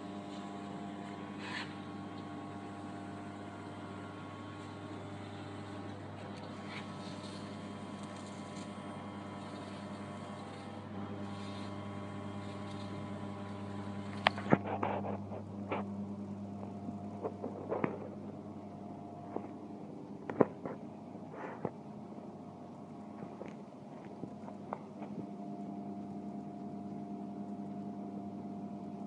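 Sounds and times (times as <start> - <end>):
furnace machinery humming: 0.0 - 29.0
hiss: 1.3 - 1.9.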